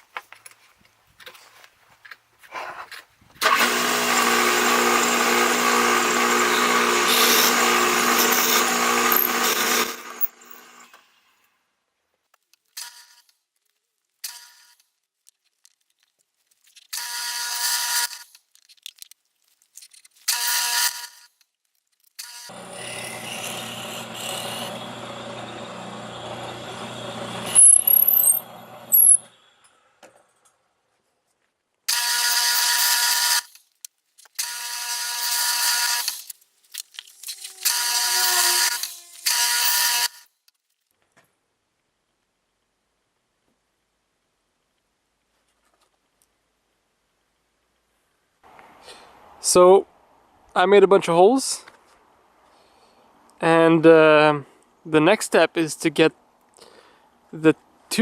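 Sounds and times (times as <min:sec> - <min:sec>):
electric drill boring into wood: 0:03.4 - 0:11.0, 0:16.9 - 0:18.3, 0:20.3 - 0:21.3, 0:22.2 - 0:29.3, 0:31.9 - 0:33.6, 0:34.4 - 0:36.3, 0:37.1 - 0:40.3
machine humming: 0:22.5 - 0:29.4
loud high-pitched squeal: 0:22.8 - 0:29.4.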